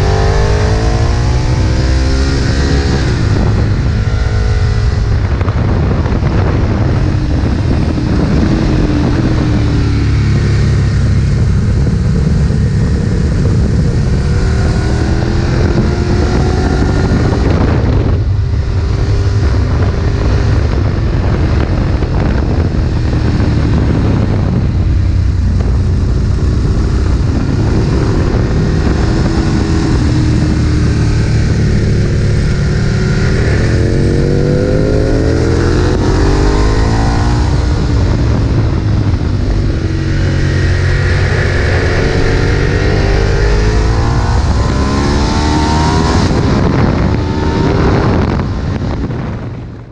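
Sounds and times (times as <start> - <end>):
motorcycle engine running hard: 0.0 - 49.9.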